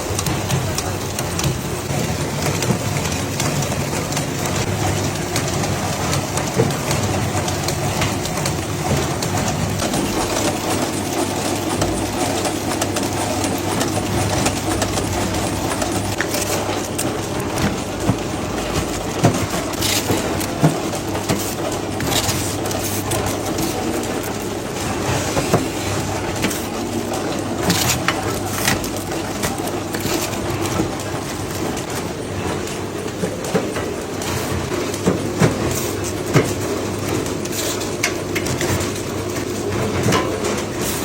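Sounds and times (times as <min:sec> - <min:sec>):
factory machinery humming: 0:00.0 - 0:41.0.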